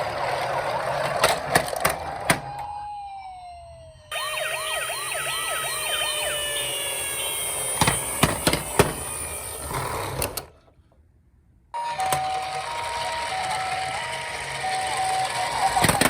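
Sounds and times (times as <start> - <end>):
toy electronic siren: 1.7 - 9.8, 11.8 - 16.0
two-pitch electronic tones: 4.1 - 8.2
small motor whirring: 4.2 - 10.5.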